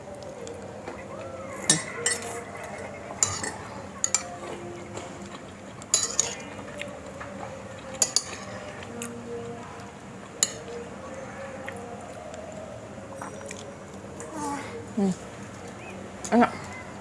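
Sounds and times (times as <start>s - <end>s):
spoon clinking on dish: 3.2s - 4.4s, 5.9s - 6.4s, 8.0s - 8.5s, 10.4s - 10.7s.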